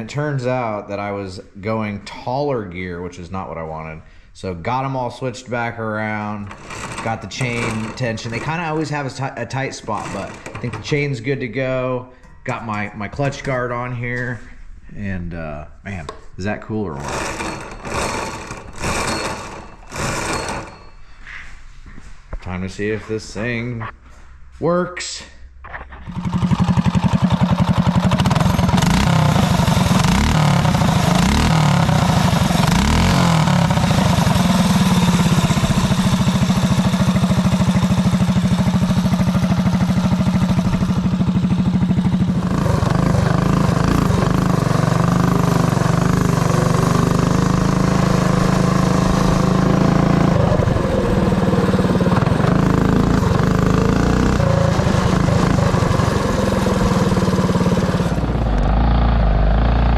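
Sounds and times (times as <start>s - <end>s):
mini bike engine running hard: 6.5s - 8.8s, 9.9s - 10.8s, 17.0s - 20.8s, 26.0s - 59.9s.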